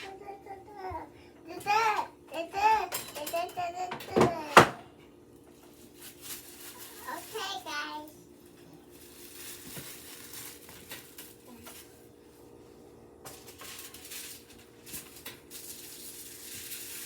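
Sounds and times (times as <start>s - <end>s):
kitchen utensils clinking: 2.6s - 4.8s
baking sheet being handled: 5.5s - 17.0s.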